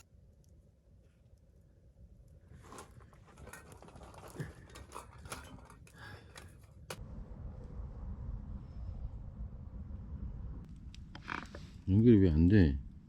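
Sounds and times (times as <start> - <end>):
rustles and small clicks: 0.0 - 7.0
low rumble: 7.0 - 13.0.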